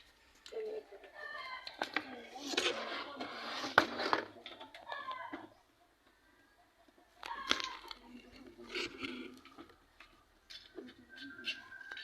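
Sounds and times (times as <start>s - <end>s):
indistinct voices: 7.2s - 12.0s.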